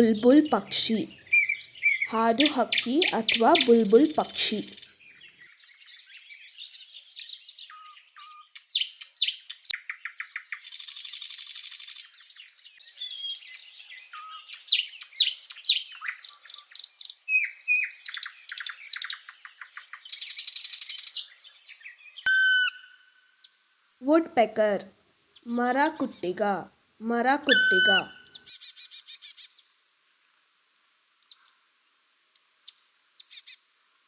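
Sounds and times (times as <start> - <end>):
nightingale singing: 0.0 - 5.4, 24.1 - 28.6.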